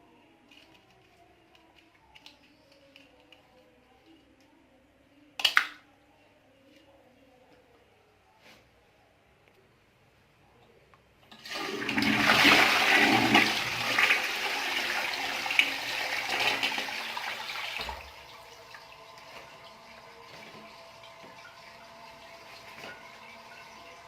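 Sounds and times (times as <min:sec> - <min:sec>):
cistern refilling water: 0:11.3 - 0:24.0
toilet flushing: 0:11.3 - 0:24.0.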